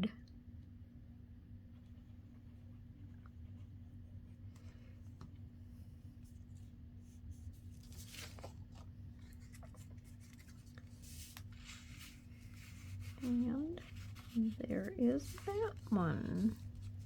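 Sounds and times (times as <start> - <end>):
steady low hum: 0.0 - 17.0
paper rustling and sliding: 6.2 - 17.0.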